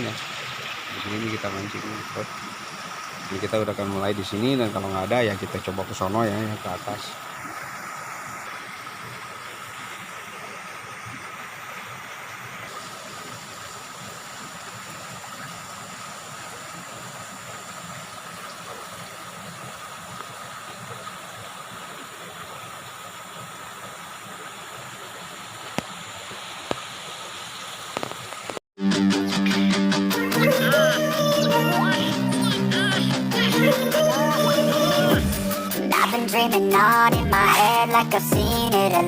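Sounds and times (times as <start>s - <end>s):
river water rushing: 0.0s - 28.6s.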